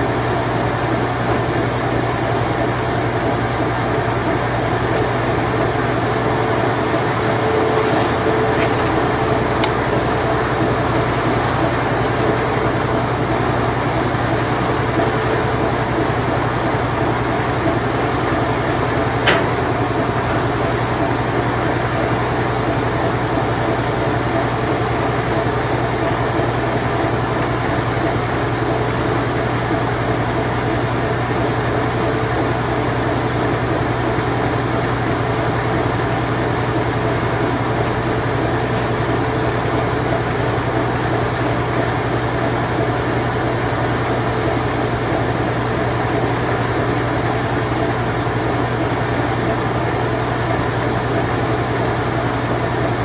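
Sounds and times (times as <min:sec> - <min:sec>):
washing machine spinning: 0:00.0 - 0:53.0.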